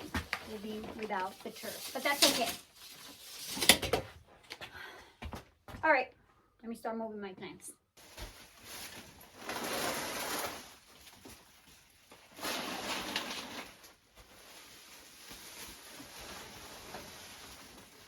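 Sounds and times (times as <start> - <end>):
potted plants scraping and rustling: 0.6 - 3.8, 8.8 - 11.6, 12.3 - 18.0.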